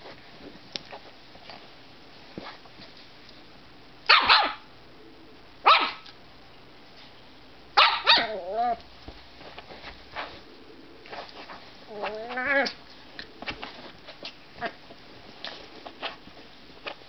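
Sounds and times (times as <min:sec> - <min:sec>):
dog grumbling barks: 0:07.8 - 0:08.8.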